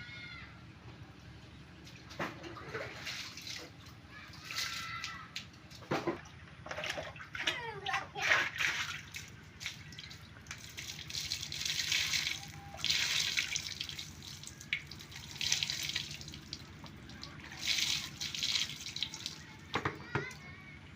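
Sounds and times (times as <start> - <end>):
water gushing and splashing: 2.2 - 3.8, 5.9 - 19.5.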